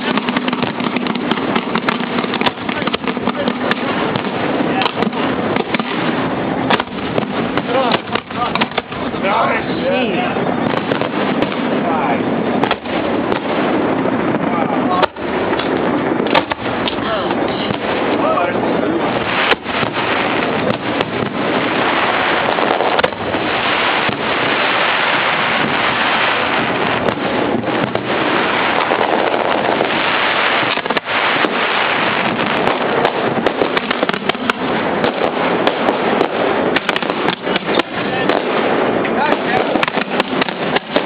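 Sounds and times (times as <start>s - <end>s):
firework crackles: 0.0s - 41.0s
fireworks bursting: 0.0s - 41.0s.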